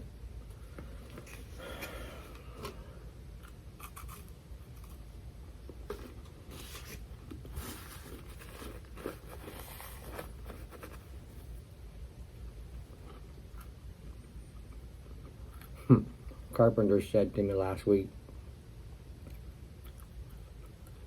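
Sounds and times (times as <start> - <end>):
chewing crispy wafer: 3.4 - 5.2, 19.2 - 21.0.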